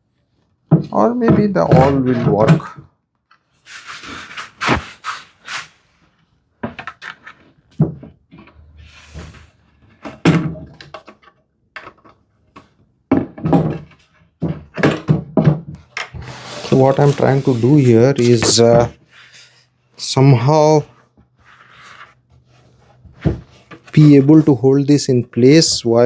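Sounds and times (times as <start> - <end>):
tools knocking on wood: 0.7 - 2.8
brief scrapes: 16.2 - 19.6.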